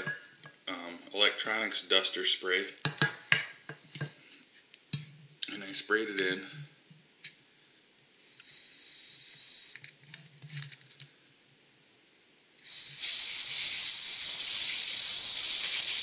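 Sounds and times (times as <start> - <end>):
compressed air can hissing: 8.2 - 9.8, 12.6 - 16.0.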